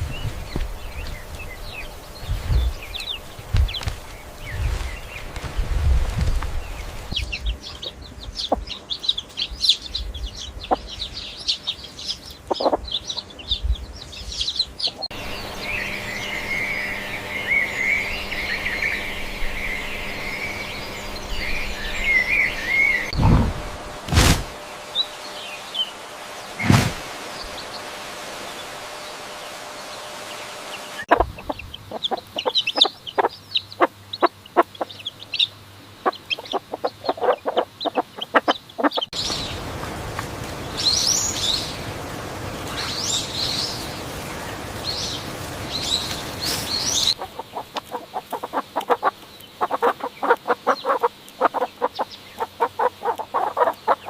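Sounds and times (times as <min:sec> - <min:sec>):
fowl clucking: 0:12.5 - 0:12.8, 0:31.1 - 0:35.0, 0:36.0 - 0:39.1, 0:47.1 - 0:54.0
high bird chirps: 0:14.3 - 0:23.2, 0:45.8 - 0:54.0
thump: 0:24.1 - 0:24.5.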